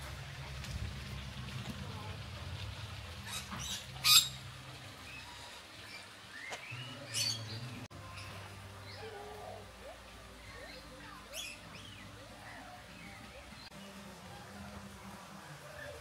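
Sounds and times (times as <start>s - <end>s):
birds chirping and calling: 3.2s - 14.0s.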